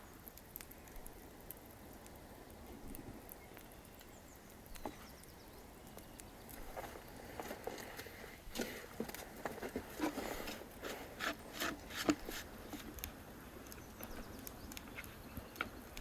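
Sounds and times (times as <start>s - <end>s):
scraping and knocking: 6.6s - 13.0s.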